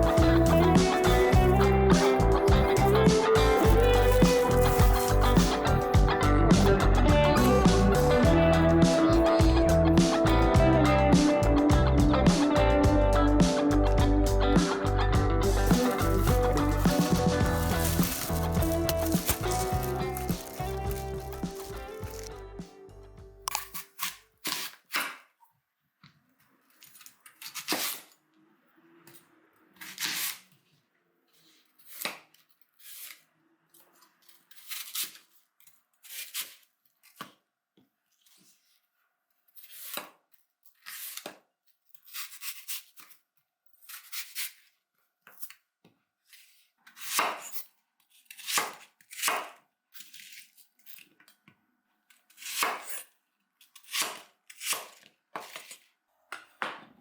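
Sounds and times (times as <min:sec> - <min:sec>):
knife cutting on cutting board: 0:15.4 - 0:22.3.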